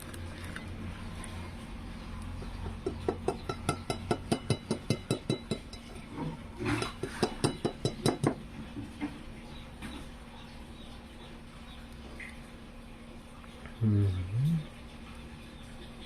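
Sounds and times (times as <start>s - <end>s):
utensil clinking against dish: 2.8s - 8.4s.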